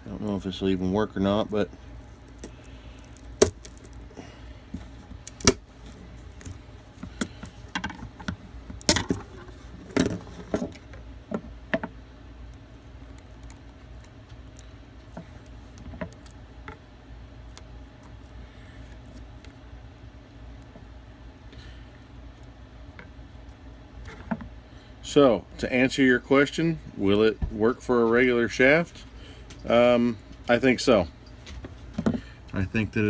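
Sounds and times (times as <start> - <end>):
handling rattles: 1.3 - 11.9.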